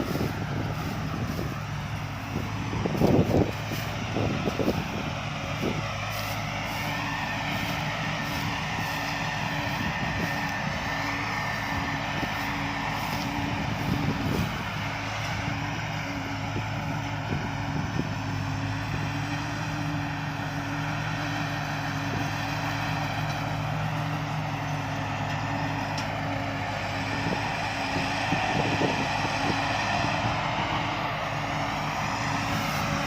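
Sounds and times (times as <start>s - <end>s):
combine harvester engine running: 0.0s - 33.0s.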